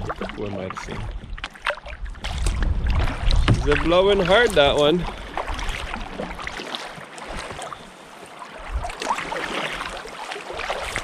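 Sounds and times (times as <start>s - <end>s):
paddle splashes: 0.0s - 11.0s
water slapping against hull: 0.0s - 11.0s
wind gusting on microphone: 2.0s - 5.2s, 8.6s - 9.0s.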